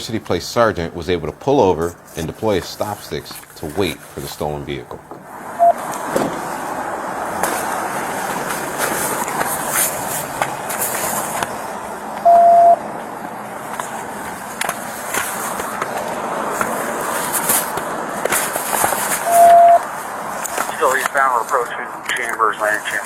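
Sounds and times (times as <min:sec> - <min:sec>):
vehicle road noise: 0:00.0 - 0:23.0
short single-pitch beeps: 0:05.6 - 0:05.8, 0:12.2 - 0:12.8, 0:19.2 - 0:19.8.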